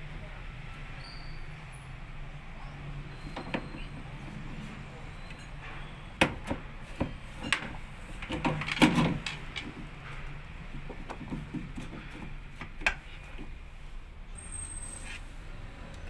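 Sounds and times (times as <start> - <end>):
clicks and knocks of parts: 3.3 - 13.6.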